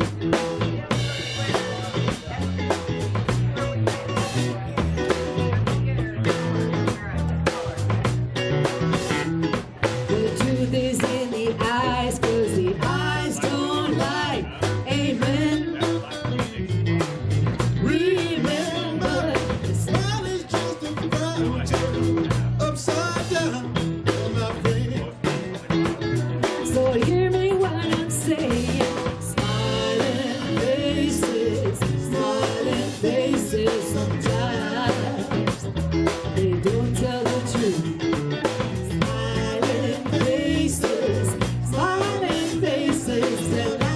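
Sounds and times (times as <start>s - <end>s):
drum kit beat: 0.0s - 43.9s
guitar: 0.0s - 43.9s
person singing: 9.9s - 16.4s, 17.8s - 22.0s, 26.4s - 38.0s, 38.8s - 43.9s.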